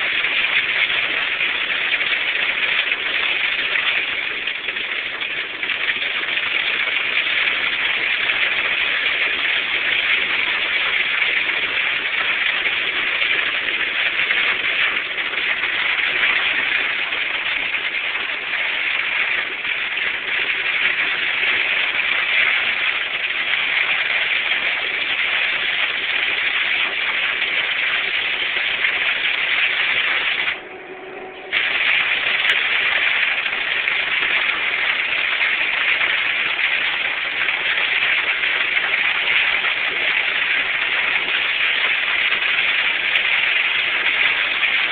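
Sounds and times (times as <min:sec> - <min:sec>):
hail and heavy rain pelting: 0:00.0 - 0:30.6, 0:31.5 - 0:44.9.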